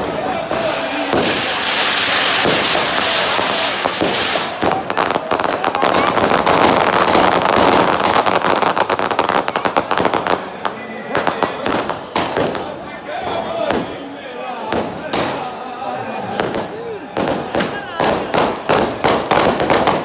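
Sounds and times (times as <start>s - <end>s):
fireworks hissing rush: 0.0s - 9.2s
fireworks crackling pops: 0.0s - 10.4s, 16.5s - 20.0s.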